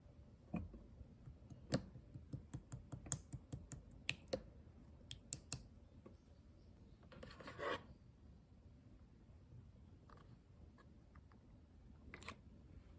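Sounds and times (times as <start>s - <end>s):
slime clicking and popping: 5.1s - 5.6s.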